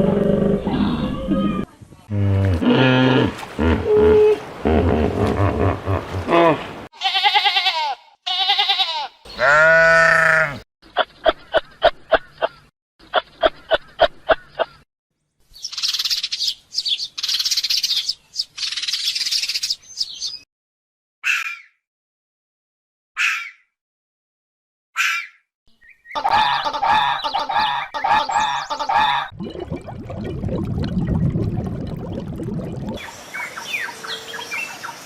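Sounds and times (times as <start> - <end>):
wavering bleats: 7.0 - 10.6.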